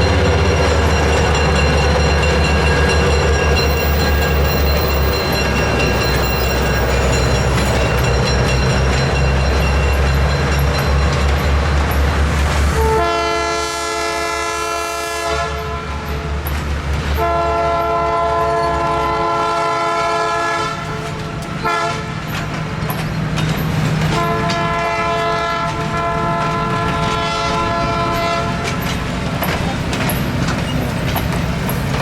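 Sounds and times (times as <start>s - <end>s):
train wheels clicking on rails: 0.0s - 12.8s, 15.4s - 19.1s, 20.8s - 32.0s
locomotive air horn blasts: 12.7s - 16.2s, 17.2s - 22.2s, 24.1s - 28.8s.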